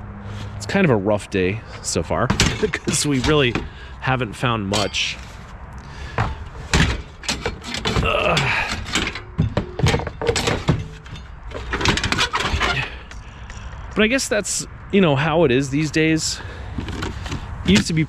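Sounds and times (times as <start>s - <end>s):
sharp knocks and clunks: 2.2s - 3.9s, 6.0s - 13.9s.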